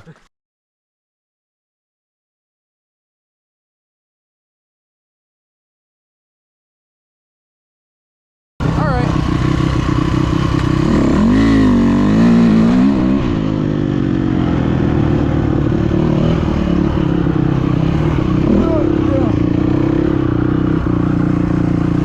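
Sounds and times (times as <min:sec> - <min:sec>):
small vehicle engine running: 0:08.6 - 0:22.0.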